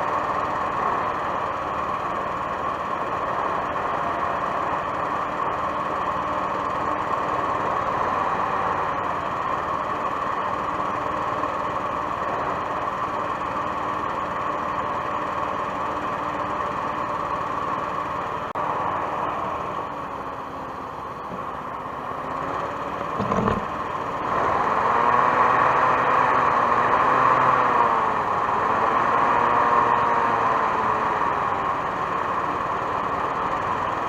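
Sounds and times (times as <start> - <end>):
hovercraft engine and fan: 0.0 - 34.0
short low thump: 23.2 - 23.7.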